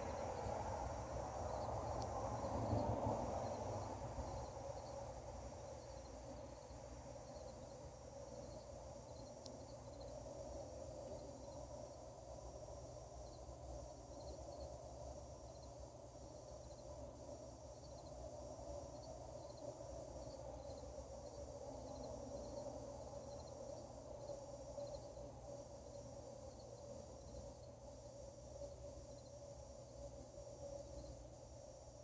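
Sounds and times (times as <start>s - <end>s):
crickets chirping: 0.0s - 32.0s
steady hum: 0.0s - 32.0s.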